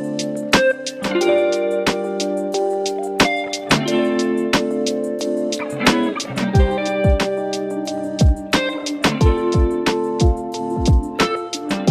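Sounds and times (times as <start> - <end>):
guitar-led instrumental music: 0.0 - 11.9
deep kick-drum hits: 6.6 - 7.2.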